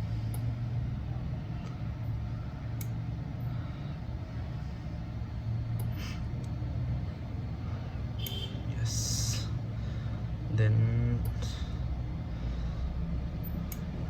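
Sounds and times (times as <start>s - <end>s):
low mechanical hum: 0.0s - 14.0s
computer mouse clicks: 13.4s - 13.9s.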